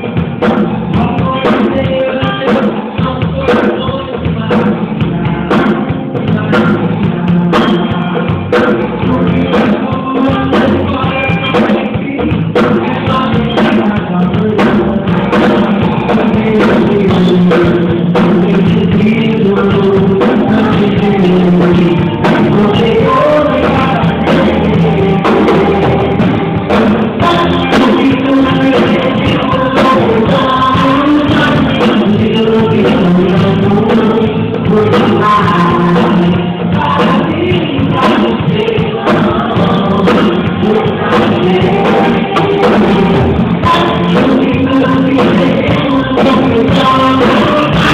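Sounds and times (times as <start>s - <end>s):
band with drums: 0.0s - 47.9s
voices singing: 0.9s - 47.9s.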